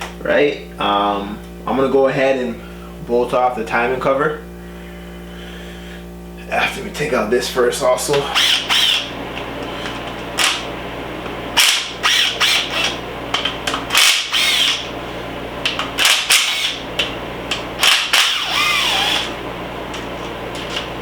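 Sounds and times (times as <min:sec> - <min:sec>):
impact gun bursts: 0:11.6 - 0:13.0, 0:13.9 - 0:14.9, 0:15.9 - 0:16.9, 0:17.8 - 0:19.3.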